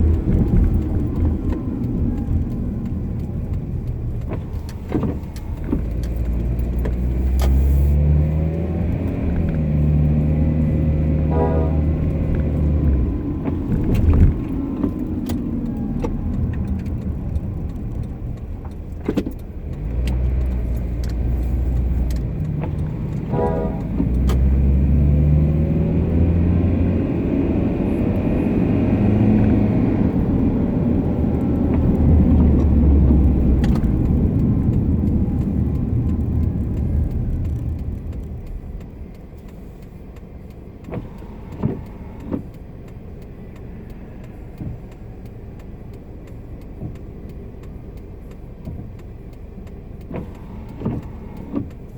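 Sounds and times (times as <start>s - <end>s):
car road and drivetrain noise: 0.0s - 51.9s
sharp clicks: 12.0s - 24.9s, 29.5s - 51.9s.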